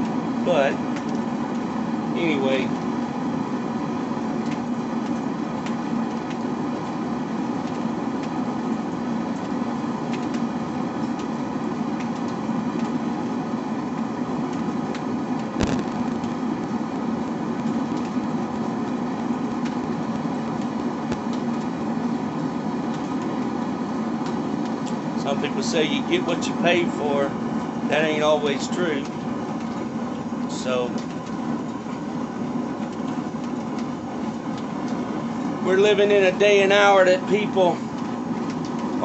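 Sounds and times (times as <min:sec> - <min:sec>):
forge running with low hum: 0:00.0 - 0:39.0
sharp click: 0:15.6 - 0:16.1.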